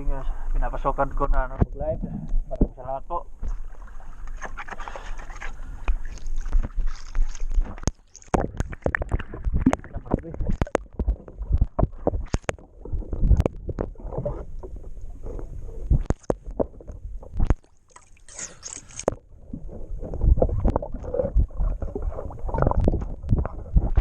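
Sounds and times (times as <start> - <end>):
water sloshing around boat: 1.9 - 24.0.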